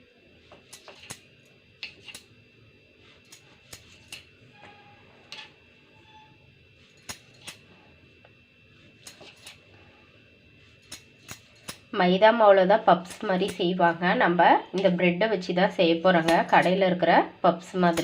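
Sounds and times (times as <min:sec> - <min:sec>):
faint high hum: 0:00.0 - 0:18.0
blade snipping through bread: 0:00.5 - 0:02.3, 0:03.2 - 0:04.3, 0:06.9 - 0:07.7, 0:08.9 - 0:09.6, 0:10.7 - 0:11.9, 0:16.2 - 0:16.8.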